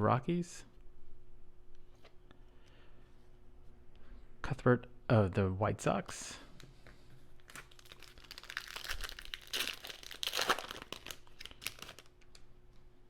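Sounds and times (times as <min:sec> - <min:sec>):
card packaging crinkling: 0:07.4 - 0:12.5.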